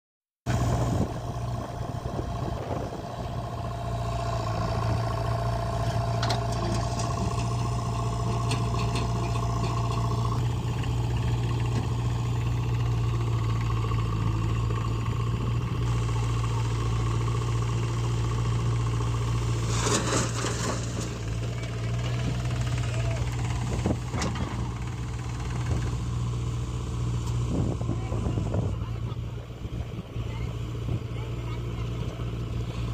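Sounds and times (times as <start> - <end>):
heavy diesel engine running: 0.4 - 32.9
clatter: 19.6 - 22.4.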